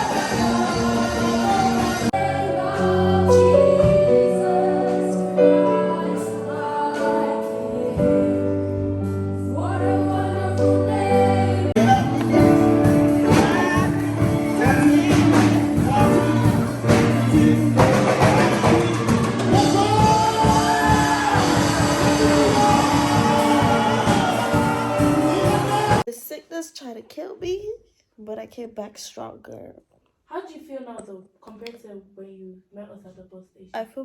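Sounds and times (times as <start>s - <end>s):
background music with singing: 0.0s - 26.1s.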